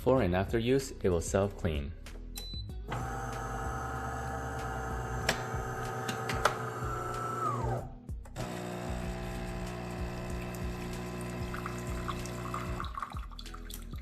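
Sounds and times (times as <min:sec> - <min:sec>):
pump humming: 0:02.9 - 0:07.8, 0:08.4 - 0:12.9
motor winding down whine: 0:02.9 - 0:11.4
espresso machine motor hum: 0:02.9 - 0:12.8.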